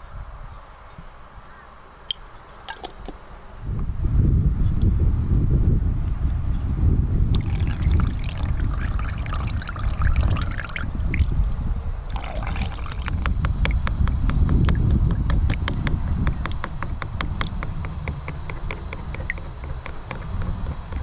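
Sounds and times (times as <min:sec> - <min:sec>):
wind rumbling on microphone: 0:00.0 - 0:01.6, 0:02.8 - 0:21.0
wet liquid handling: 0:07.3 - 0:11.4, 0:12.1 - 0:13.2.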